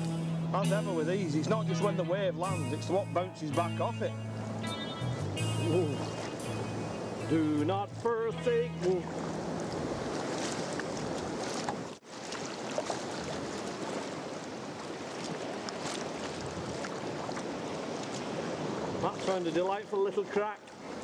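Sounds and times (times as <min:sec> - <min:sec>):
rough sea sloshing and breaking: 0:08.9 - 0:21.0
wind buffeting microphone: 0:13.1 - 0:19.2.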